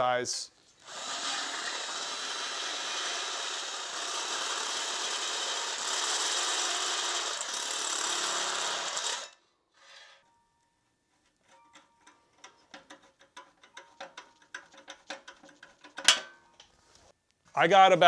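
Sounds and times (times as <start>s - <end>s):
power drill boring through sheet metal: 0.8s - 9.4s.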